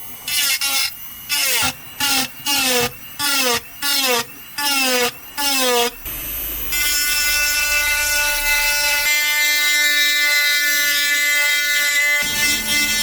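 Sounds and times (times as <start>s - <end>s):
power tool motor whining: 0.3s - 9.1s.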